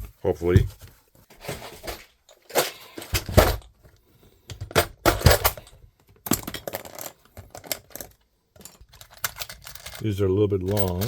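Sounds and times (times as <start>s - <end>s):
small metal parts clinking: 4.5s - 11.0s.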